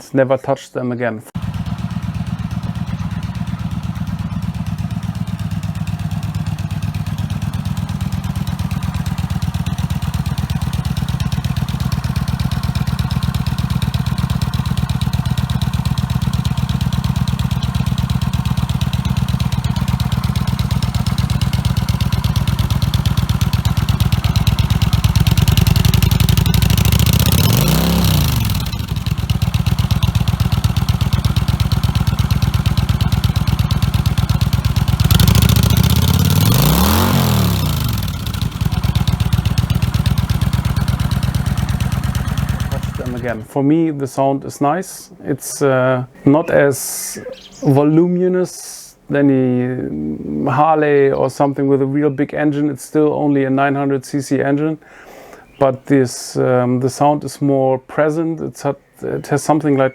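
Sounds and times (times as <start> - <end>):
motorcycle exhaust rumble: 1.4 - 43.5.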